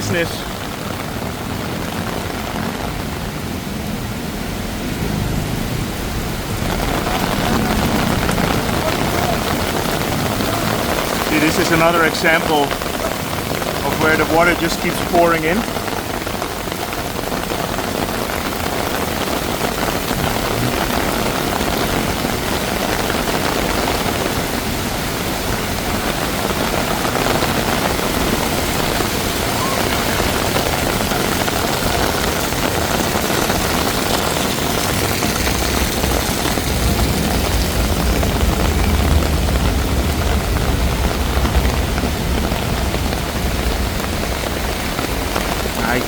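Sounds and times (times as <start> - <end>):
heavy rain pouring: 0.0 - 46.0
low rumble: 27.7 - 45.4.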